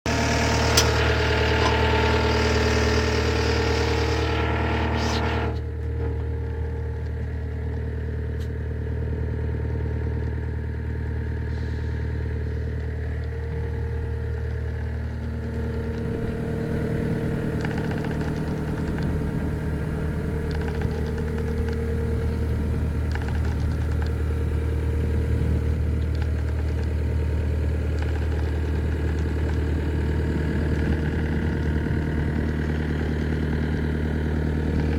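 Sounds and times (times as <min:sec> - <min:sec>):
diesel engine running: 0:00.0 - 0:34.9.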